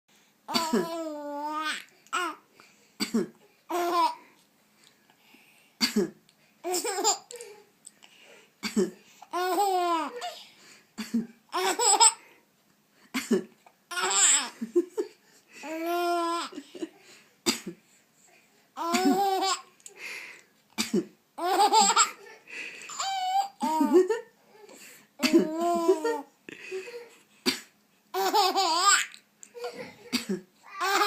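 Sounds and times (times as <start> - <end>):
baby laughing: 0.5 - 2.4, 3.7 - 4.2, 6.6 - 7.6, 9.3 - 10.4, 11.5 - 12.2, 13.9 - 14.6, 15.6 - 16.9, 18.8 - 19.7, 21.4 - 24.3, 25.2 - 27.1, 28.1 - 31.0
adult coughing: 3.0 - 3.4, 5.8 - 6.2, 8.6 - 9.0, 13.1 - 13.5, 20.8 - 21.2, 25.2 - 25.6, 29.7 - 30.5.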